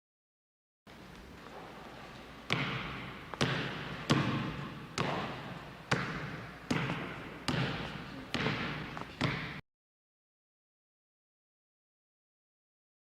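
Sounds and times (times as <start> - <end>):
low steady hiss: 0.9 - 9.3.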